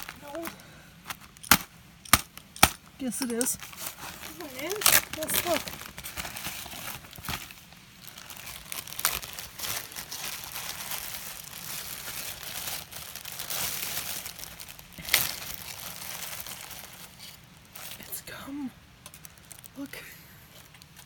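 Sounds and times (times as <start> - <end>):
crinkling and rustling: 0.0 - 18.2, 19.0 - 21.0
sharp clicks: 1.4 - 3.5.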